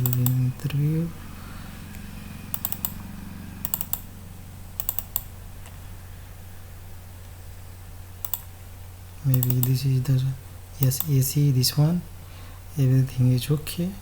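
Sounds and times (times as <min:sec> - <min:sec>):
keyboard and mouse clicking: 0:00.0 - 0:00.4, 0:02.5 - 0:03.0, 0:03.6 - 0:04.1, 0:04.8 - 0:05.8, 0:08.2 - 0:08.5, 0:09.3 - 0:09.8, 0:10.8 - 0:11.2
low electrical hum: 0:00.0 - 0:14.0.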